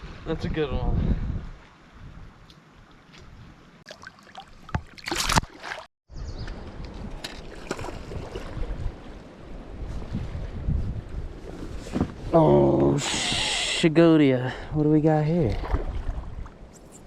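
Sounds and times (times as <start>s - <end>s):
wind buffeting microphone: 0.0s - 2.5s, 6.1s - 13.5s
water lapping against boat: 15.5s - 16.7s.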